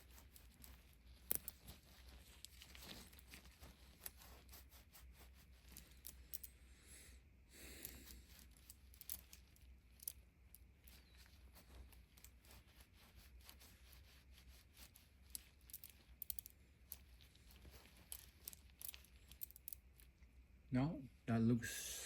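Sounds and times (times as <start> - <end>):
short scratchy rubs: 0.0 - 6.0, 10.8 - 16.3
steady low hum: 0.0 - 22.0
small metal clicks: 7.8 - 12.3, 14.8 - 20.1.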